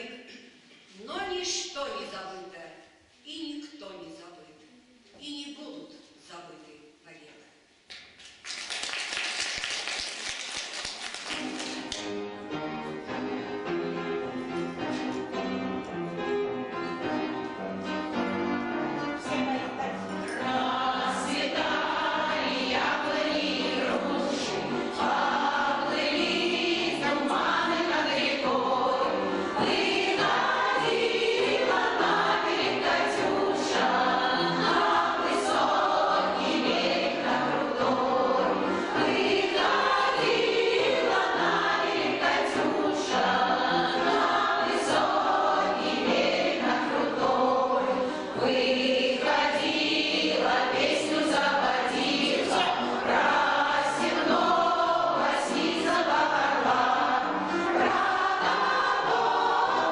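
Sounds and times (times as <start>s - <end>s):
choir singing: 18.4s - 59.9s.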